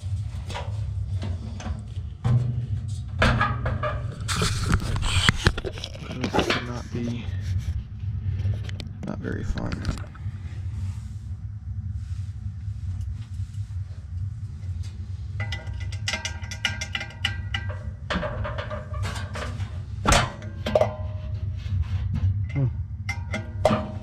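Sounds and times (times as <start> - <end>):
steady low hum: 0.0 - 24.0
metal tools clinking and rattling: 15.4 - 21.2.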